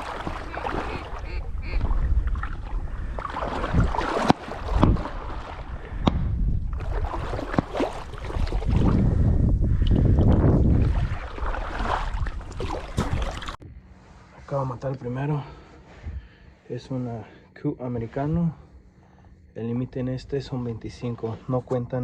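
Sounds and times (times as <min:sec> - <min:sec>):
waterfowl quacking and honking: 0:00.0 - 0:02.0
wind rumble on microphone: 0:00.0 - 0:14.1, 0:16.0 - 0:16.3.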